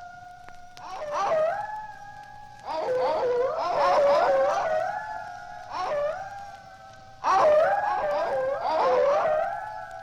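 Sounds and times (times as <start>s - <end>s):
eerie wailing tone: 0.0s - 10.0s.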